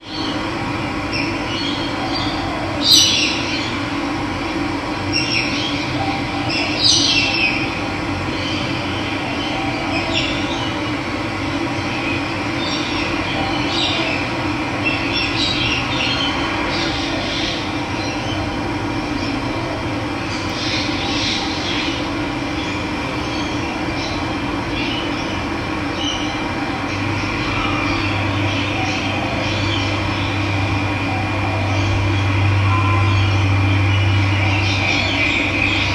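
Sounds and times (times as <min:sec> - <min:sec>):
birds chirping: 0:20.2 - 0:35.9.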